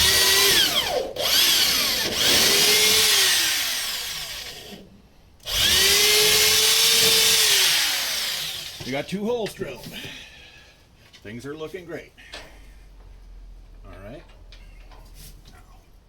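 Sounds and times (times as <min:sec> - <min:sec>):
electric drill drilling wood: 0:00.0 - 0:04.8, 0:05.4 - 0:08.9.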